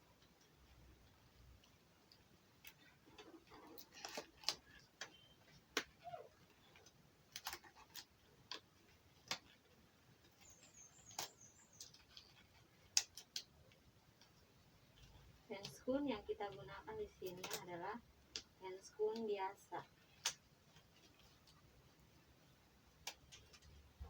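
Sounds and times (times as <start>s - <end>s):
glove material snapping: 2.6s - 10.4s, 11.0s - 14.3s, 20.1s - 21.6s, 22.9s - 23.8s.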